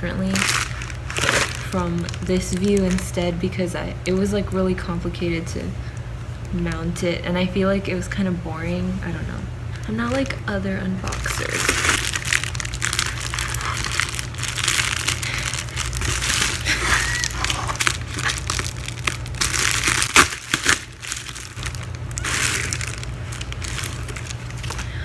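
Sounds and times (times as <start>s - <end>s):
plastic wrap crinkling: 0.0s - 4.2s, 9.8s - 25.0s
steady low hum: 0.0s - 25.0s.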